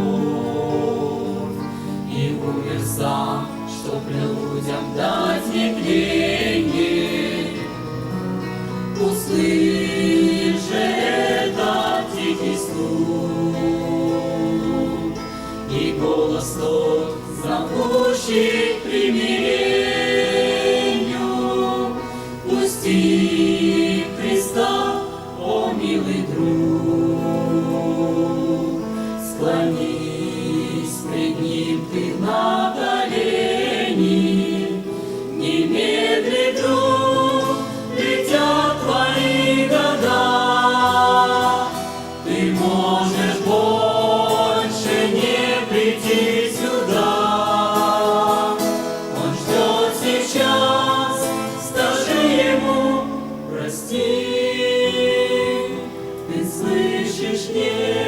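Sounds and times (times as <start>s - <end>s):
choir singing: 0.0s - 58.0s.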